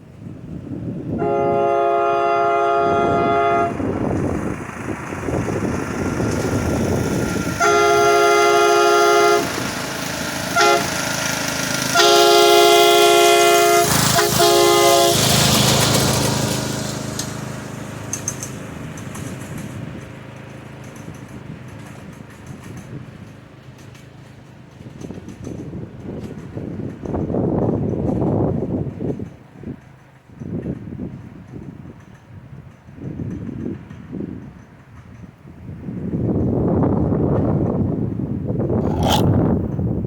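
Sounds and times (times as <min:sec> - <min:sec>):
train horn blasts: 0:01.2 - 0:03.8, 0:07.5 - 0:09.8, 0:10.4 - 0:15.6, 0:38.8 - 0:39.3.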